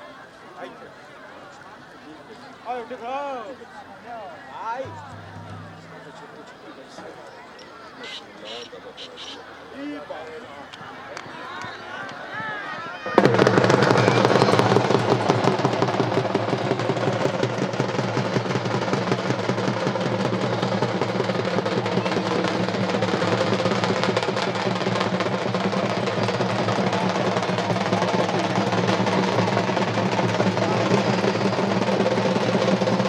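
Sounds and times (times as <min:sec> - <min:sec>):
rapid dense drumming: 0:04.9 - 0:06.6, 0:13.2 - 0:33.0
steady low drone: 0:04.9 - 0:06.7.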